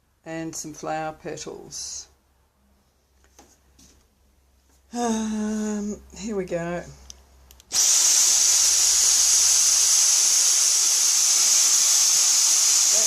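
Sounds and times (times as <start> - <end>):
vacuum cleaner running: 7.7 - 13.0.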